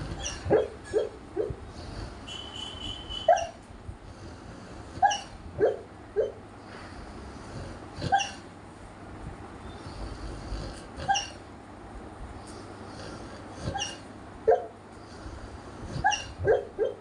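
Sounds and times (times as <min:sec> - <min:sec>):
dog snoring: 0:00.0 - 0:00.6, 0:01.6 - 0:02.3, 0:04.0 - 0:05.4, 0:06.8 - 0:08.4, 0:09.7 - 0:11.4, 0:12.5 - 0:14.0, 0:15.0 - 0:16.4.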